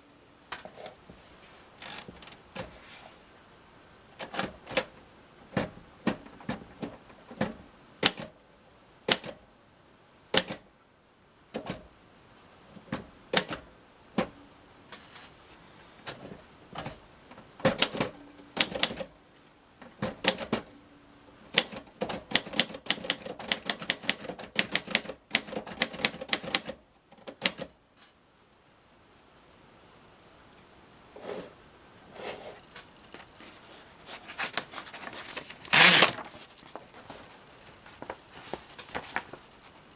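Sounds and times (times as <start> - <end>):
typewriter keystrokes: 5.5 - 8.3, 9.1 - 9.4, 10.3 - 10.6, 13.3 - 13.6, 17.6 - 19.1, 19.9 - 20.7, 21.5 - 27.8.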